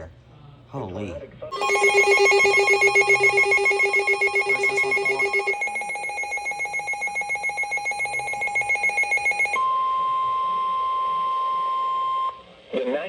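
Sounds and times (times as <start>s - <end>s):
fast pulsing electronic alarm: 1.5s - 9.6s
steady warning tone: 1.5s - 9.6s.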